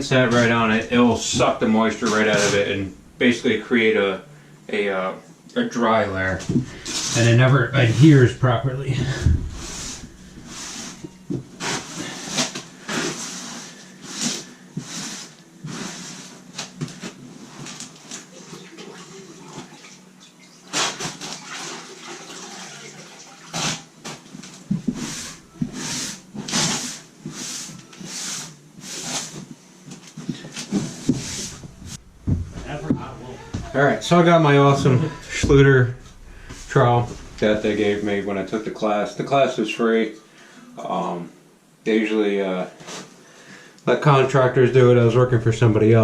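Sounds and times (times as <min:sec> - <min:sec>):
wet sponge scrubbing floor: 0:00.0 - 0:03.6, 0:06.5 - 0:16.5, 0:24.6 - 0:29.5, 0:30.3 - 0:38.5.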